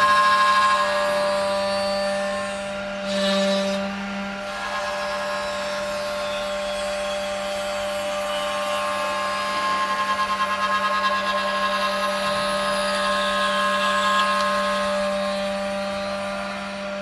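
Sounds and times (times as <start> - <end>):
machine motors humming and whining: 0.0 - 17.0.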